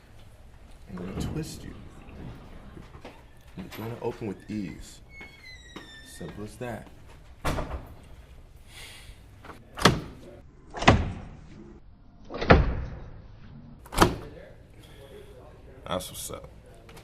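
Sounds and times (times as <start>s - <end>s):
door banging: 0.9s - 4.7s, 7.4s - 8.0s.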